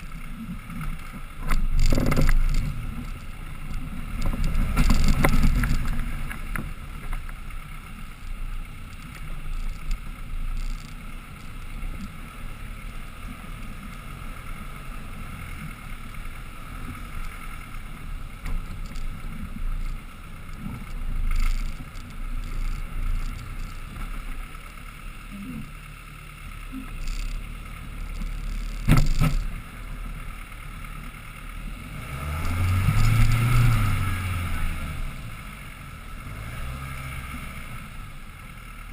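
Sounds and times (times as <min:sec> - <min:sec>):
vehicle engine rumbling: 0:00.0 - 0:38.9
vehicle knocks and bumps: 0:00.8 - 0:03.2, 0:03.8 - 0:07.4, 0:28.8 - 0:29.6.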